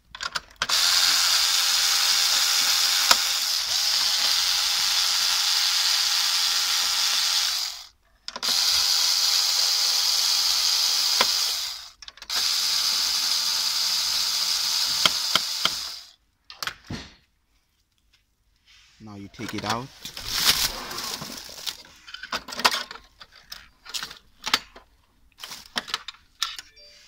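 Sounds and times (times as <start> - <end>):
electric screwdriver running: 0.6 - 16.2.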